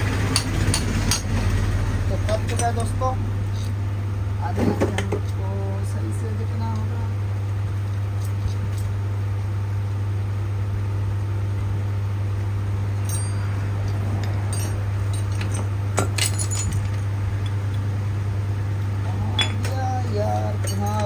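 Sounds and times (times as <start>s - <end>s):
steady low hum: 0.0s - 21.0s
metal tools clinking: 2.2s - 3.0s, 13.0s - 17.8s, 19.2s - 21.0s.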